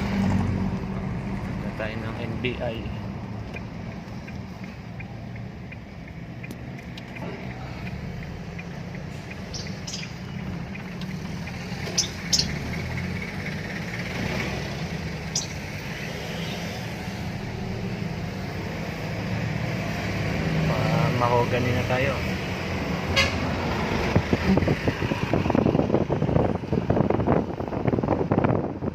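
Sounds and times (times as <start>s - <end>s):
pickup engine and road rumble: 0.0s - 28.9s
faint regular ticking: 3.4s - 11.8s.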